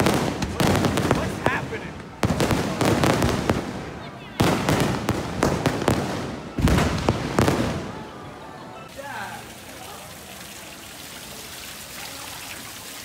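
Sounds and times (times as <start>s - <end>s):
fireworks booming: 0.0s - 8.4s
fireworks crackling: 0.0s - 13.0s.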